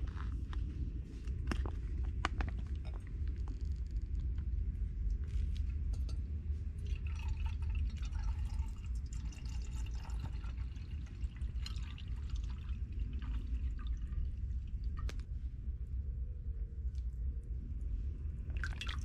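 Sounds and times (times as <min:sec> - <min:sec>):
low rumble: 0:00.0 - 0:19.0
water pouring into a vessel: 0:06.7 - 0:15.0, 0:18.6 - 0:19.0.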